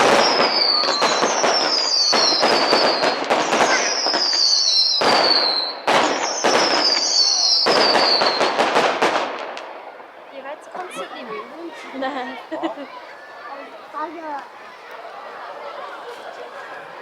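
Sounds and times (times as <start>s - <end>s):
descending firework whistles: 0.0s - 9.9s
fireworks crackling and popping: 0.0s - 10.1s.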